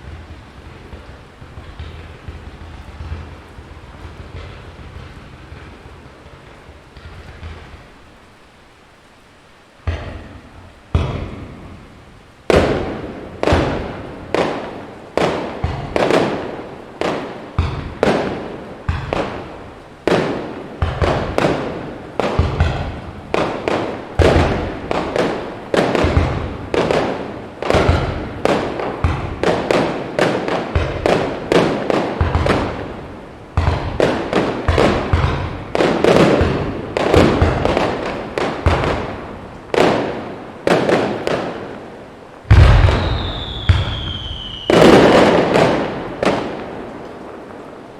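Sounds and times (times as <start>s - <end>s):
firework shells bursting: 12.5s - 47.7s.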